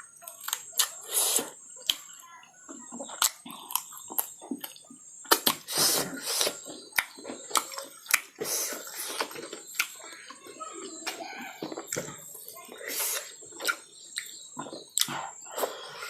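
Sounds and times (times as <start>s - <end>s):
chewing with wet mouth clicks: 0.2s - 2.2s, 2.9s - 15.9s
rushing breaths or slurps: 1.0s - 1.6s, 5.3s - 9.6s, 12.7s - 13.8s.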